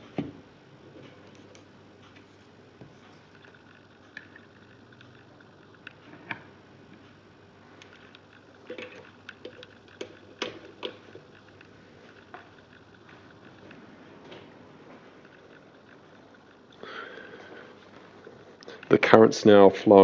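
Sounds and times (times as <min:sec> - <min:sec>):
clicks of test leads and connectors: 0:07.8 - 0:14.5.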